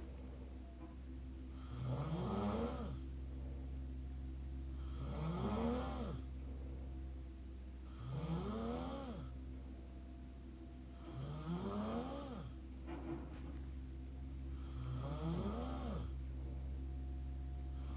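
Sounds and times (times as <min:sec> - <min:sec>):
steady low hum: 0:00.0 - 0:17.9
person snoring: 0:01.5 - 0:03.0, 0:04.7 - 0:06.3, 0:07.8 - 0:09.4, 0:11.0 - 0:12.6, 0:14.5 - 0:16.2.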